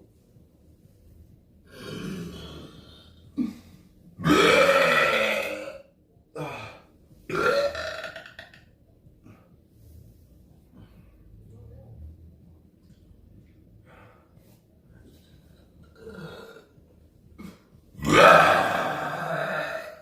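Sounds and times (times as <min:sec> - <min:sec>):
person burping: 0:01.7 - 0:08.7, 0:15.9 - 0:16.8, 0:17.4 - 0:20.0.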